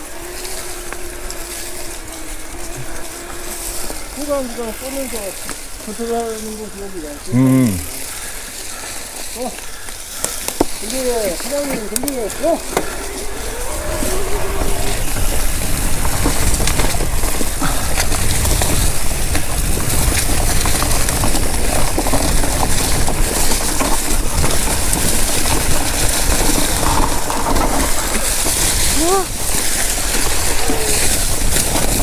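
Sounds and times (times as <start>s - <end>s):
bike tyres rattling over dirt: 0.0s - 32.0s
wind on microphone: 12.0s - 32.0s.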